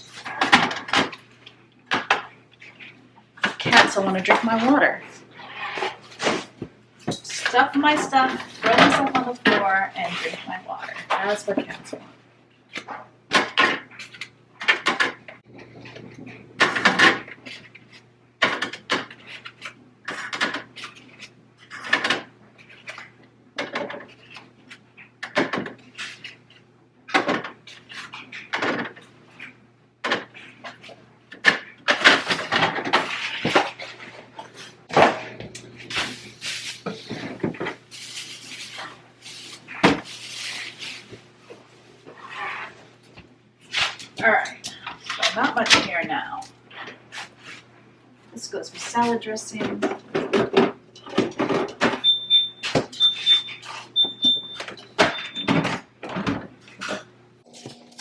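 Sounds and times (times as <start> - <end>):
refrigerator hum: 0.0 - 58.0
jars and bottles clattering on shelves: 5.8 - 12.0, 48.8 - 58.0.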